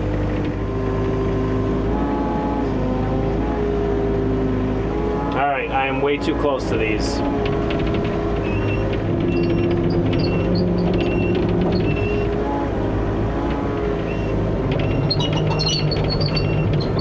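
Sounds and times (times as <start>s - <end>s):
excavator diesel engine running: 0.0s - 17.0s
hydraulic whine: 5.1s - 17.0s
high squeaks or clinks: 14.1s - 17.0s.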